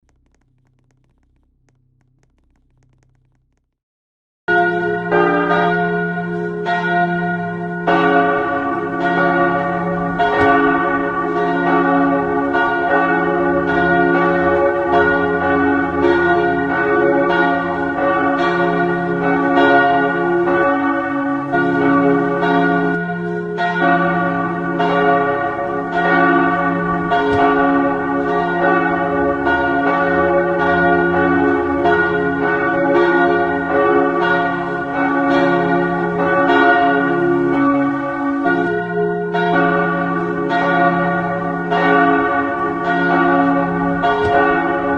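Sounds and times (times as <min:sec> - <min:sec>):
church bells pealing: 0:04.5 - 0:44.9.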